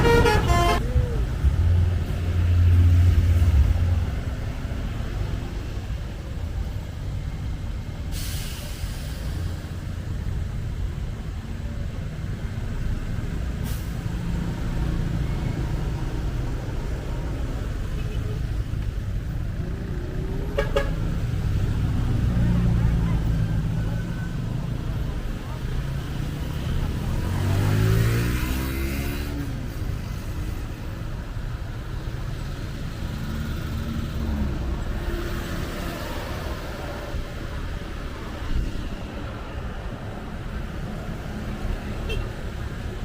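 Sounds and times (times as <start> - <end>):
bus engine rumbling: 0.0 - 43.0
air brakes hissing: 8.0 - 9.9, 13.6 - 14.2.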